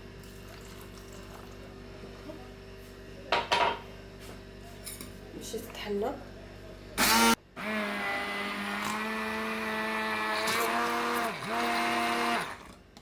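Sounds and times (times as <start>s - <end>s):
blender motor whine: 7.0s - 12.8s.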